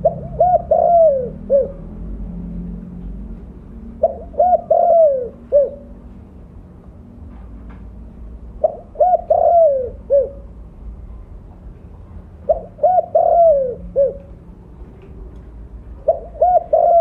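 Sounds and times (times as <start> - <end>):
dove cooing: 0.0 - 1.9, 4.0 - 6.0, 8.6 - 10.6, 12.5 - 14.4, 16.0 - 17.0.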